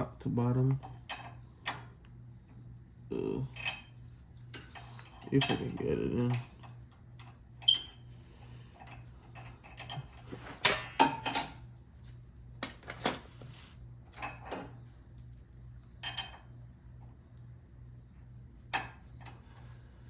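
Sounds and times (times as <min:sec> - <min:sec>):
metal bolt clinking against bracket: 0:09.7 - 0:11.6.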